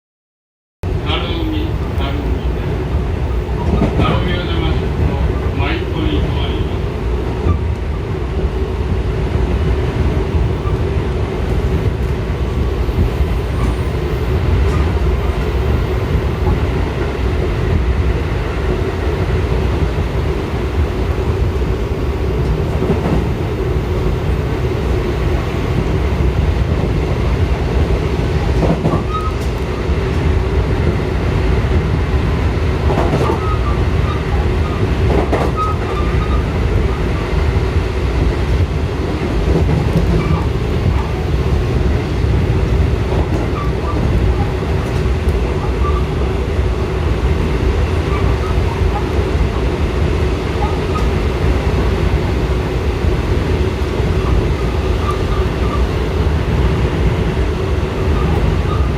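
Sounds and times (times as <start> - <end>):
train wheels rumbling on rails: 0.9 - 58.9
squeaks and clicks: 28.8 - 29.6, 33.0 - 36.5.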